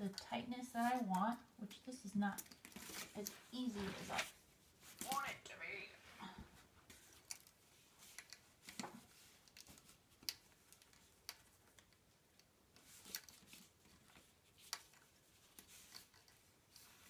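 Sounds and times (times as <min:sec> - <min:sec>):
wire clicks and scrapes: 0:06.9 - 0:17.0.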